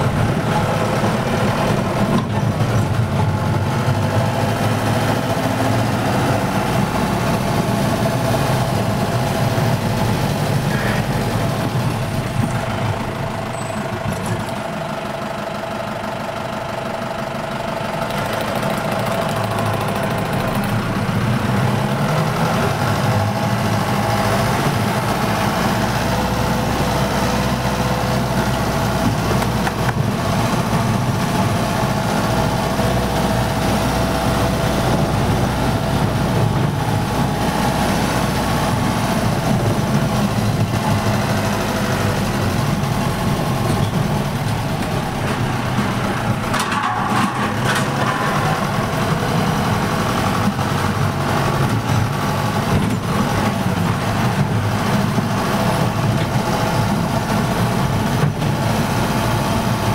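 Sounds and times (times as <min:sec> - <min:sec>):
motor engine running: 0:00.0 - 0:59.9.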